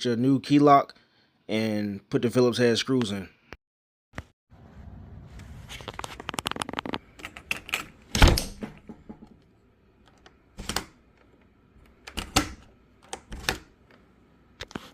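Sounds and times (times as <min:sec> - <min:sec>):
deadbolt and latch clicking: 0:07.2 - 0:09.0, 0:10.1 - 0:11.0, 0:11.9 - 0:13.7.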